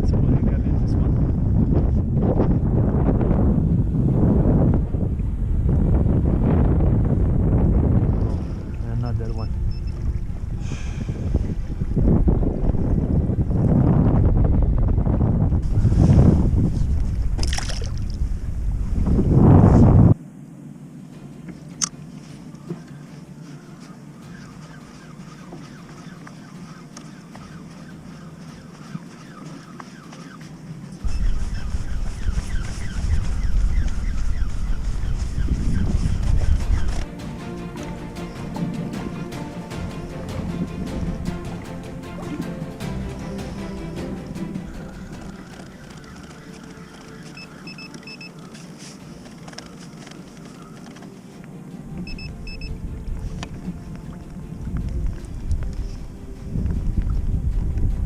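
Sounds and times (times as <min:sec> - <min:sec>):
wind rumble: 0:00.0 - 0:58.0
sea noise: 0:02.1 - 0:58.0
background hiss: 0:20.1 - 0:35.4
bird chirps: 0:22.6 - 0:37.0, 0:44.7 - 0:48.8
short high electronic beeps: 0:47.4 - 0:48.4.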